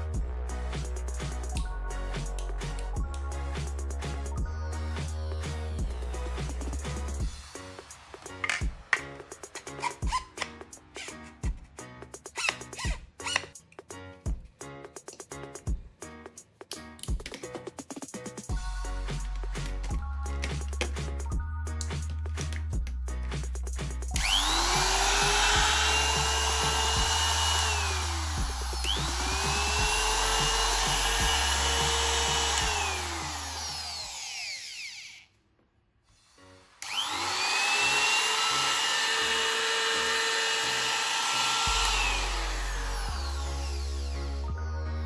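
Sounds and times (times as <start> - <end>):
electric router whining: 24.2 - 35.3, 36.8 - 44.4.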